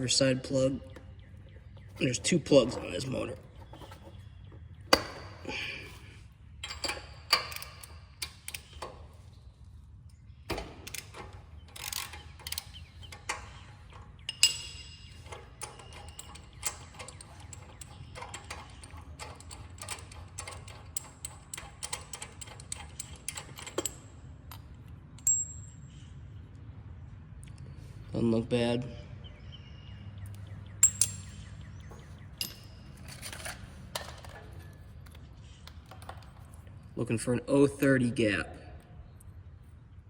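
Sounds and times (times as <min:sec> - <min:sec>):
socket wrench ratchet clicking: 0:06.6 - 0:09.0, 0:10.5 - 0:24.1.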